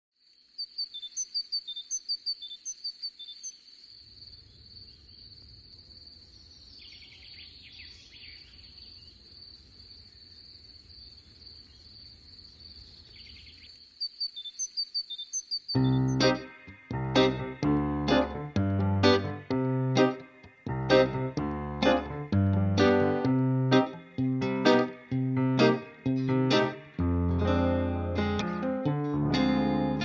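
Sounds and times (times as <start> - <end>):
high chirping trill: 14.4 - 27.0.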